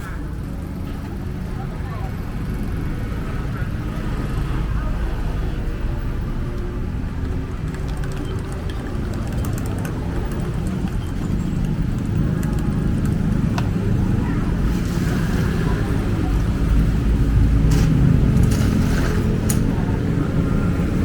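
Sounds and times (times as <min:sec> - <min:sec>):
road traffic passing: 0:00.0 - 0:21.0
sharp clicks: 0:06.5 - 0:13.8.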